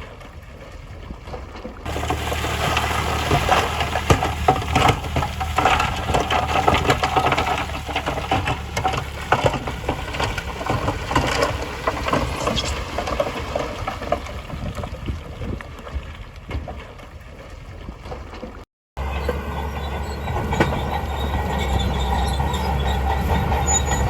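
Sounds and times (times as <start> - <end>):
gravel and stones crunching: 1.3 - 17.1
diesel machine engine hum: 1.9 - 13.6, 19.0 - 24.0.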